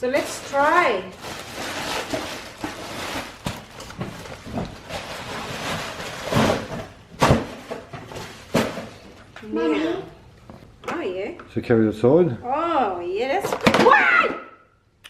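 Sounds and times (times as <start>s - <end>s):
plastic vacuum parts handled: 0.5s - 9.2s.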